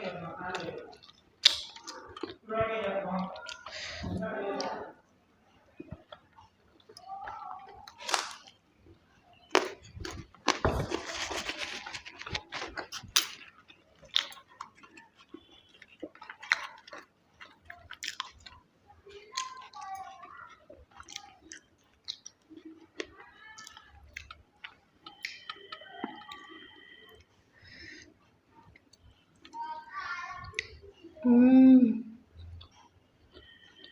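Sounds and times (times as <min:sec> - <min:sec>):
wet chewing: 0:00.0 - 0:02.4, 0:05.7 - 0:29.6, 0:32.3 - 0:33.9.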